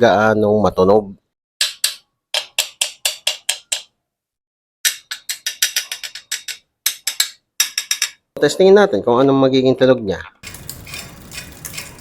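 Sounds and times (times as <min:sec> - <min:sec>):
bicycle hub ratchet clicking: 0:10.4 - 0:12.0.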